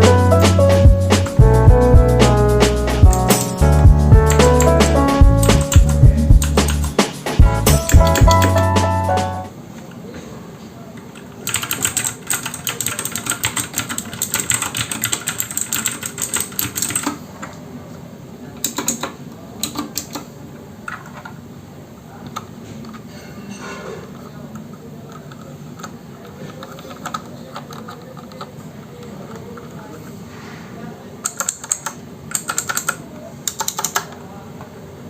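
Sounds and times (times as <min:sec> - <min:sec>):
mechanical keyboard typing: 0:02.2 - 0:09.0, 0:11.1 - 0:17.2, 0:18.6 - 0:20.3, 0:25.1 - 0:29.8, 0:31.2 - 0:34.2.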